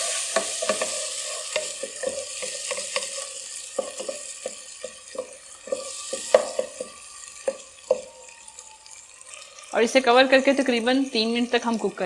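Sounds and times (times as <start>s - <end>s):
spoon scraping a pan: 0.0s - 9.7s
masala sizzling in oil: 0.0s - 12.0s
water splashing into pot: 0.0s - 12.0s.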